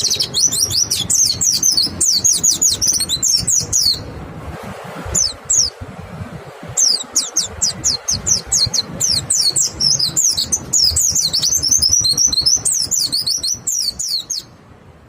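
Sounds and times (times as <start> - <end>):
birds chirping rapidly: 0.0 - 4.3, 5.0 - 14.7
low background rumble: 0.0 - 15.0.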